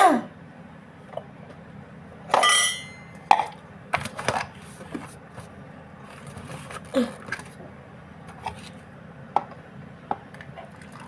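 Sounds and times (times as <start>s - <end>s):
drinking glass clinking: 2.4s - 3.1s.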